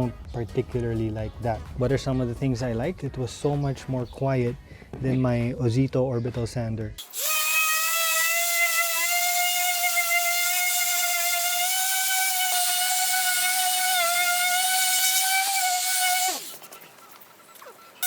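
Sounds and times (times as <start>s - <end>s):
orbital sander whining: 7.0s - 17.1s.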